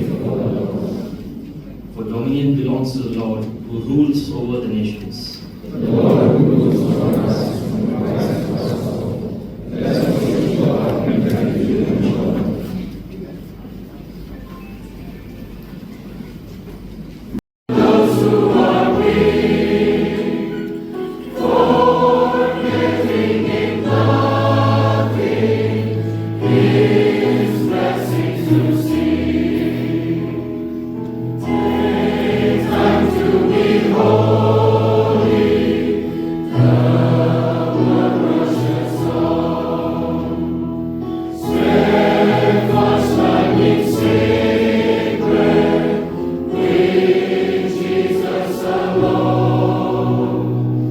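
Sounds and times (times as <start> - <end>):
choir singing a hymn: 0.0 - 1.4, 5.8 - 12.7, 17.7 - 50.9.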